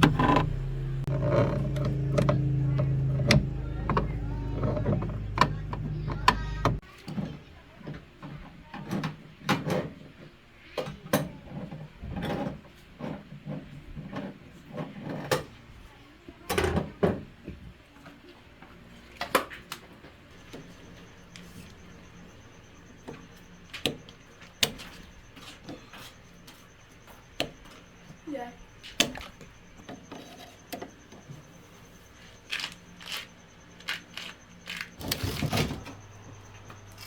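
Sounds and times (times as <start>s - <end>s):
machine motor humming: 0.0s - 6.8s
metal clanks and knocks: 0.0s - 6.8s.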